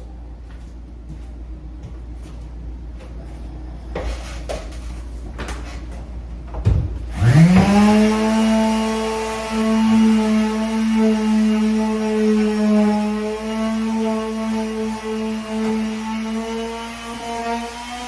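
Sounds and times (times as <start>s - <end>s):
electric sander motor whining: 7.2s - 18.0s.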